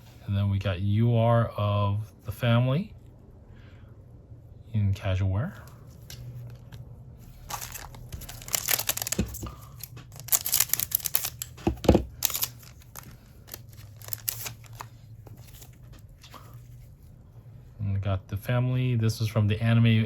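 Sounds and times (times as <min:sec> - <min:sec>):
foil pack crinkling and tearing: 0:07.3 - 0:15.8.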